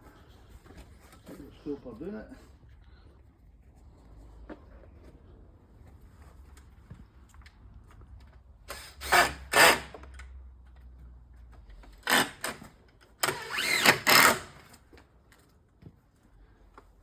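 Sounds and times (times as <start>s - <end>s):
cordless drill driving screws: 8.7s - 10.1s, 12.0s - 14.7s.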